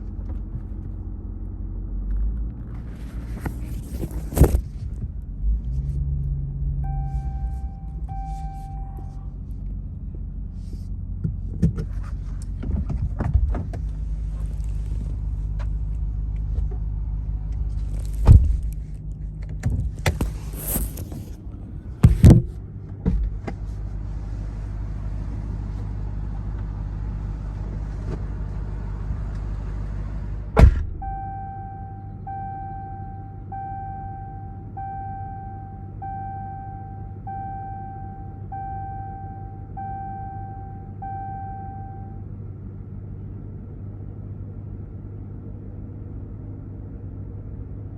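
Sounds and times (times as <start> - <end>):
pickup engine low rumble: 0.0 - 47.9
vehicle warning chime beeping: 6.8 - 9.2, 31.0 - 42.3
sharp knocks and thumps: 22.0 - 23.6.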